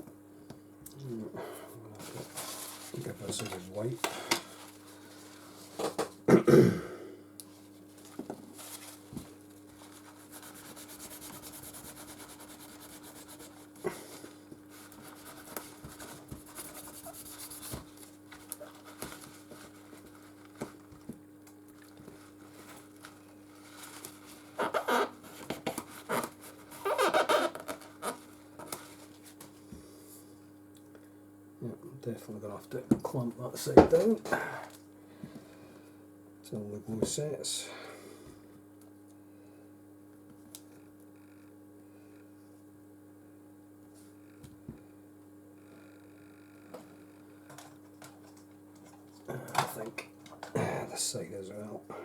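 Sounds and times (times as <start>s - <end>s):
low electrical hum: 0.0s - 52.0s
cloth wiping a phone: 9.7s - 17.9s.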